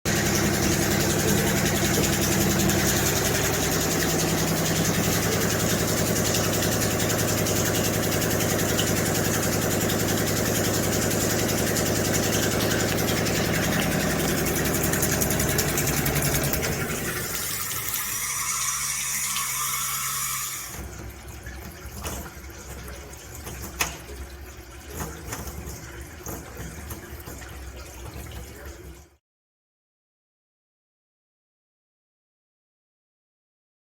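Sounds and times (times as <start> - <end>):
motor humming: 0.1 - 20.9.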